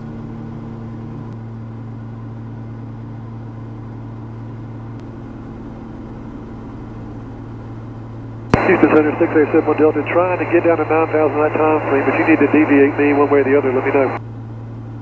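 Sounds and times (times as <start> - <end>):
piston engines droning in cabin: 8.5 - 14.2.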